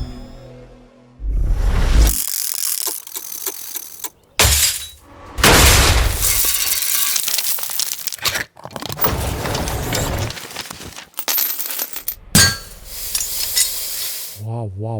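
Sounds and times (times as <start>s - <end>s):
crackling clicks: 2.1s - 4.2s
small pieces rattling and clattering: 2.1s - 5.0s, 5.9s - 14.4s
loud crash: 4.4s - 7.3s.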